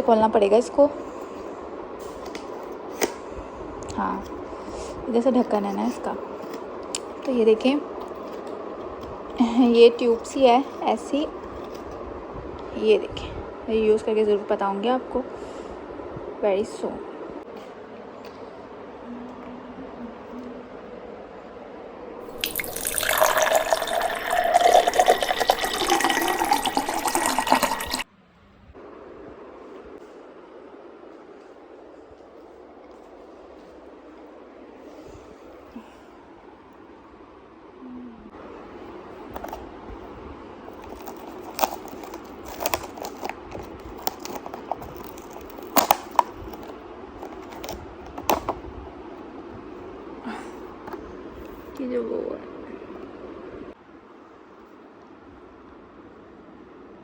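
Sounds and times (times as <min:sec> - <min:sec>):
steady background hum: 0:00.0 - 0:57.0
tap water splashing: 0:22.3 - 0:28.0.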